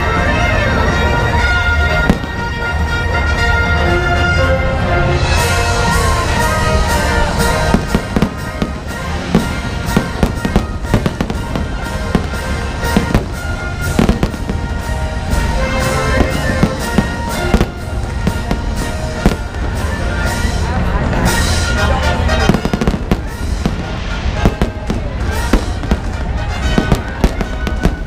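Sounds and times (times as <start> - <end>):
music playing: 0.0 - 28.0.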